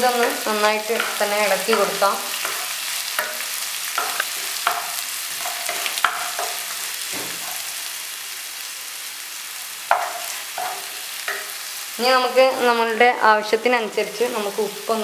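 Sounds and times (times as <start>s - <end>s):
spoon stirring and scraping pan: 0.0s - 8.2s, 9.7s - 12.5s
onion sizzling in a pan: 0.0s - 15.0s.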